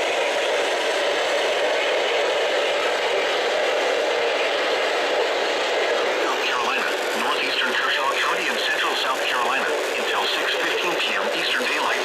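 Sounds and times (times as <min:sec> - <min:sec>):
radio static hiss: 0:06.2 - 0:12.0.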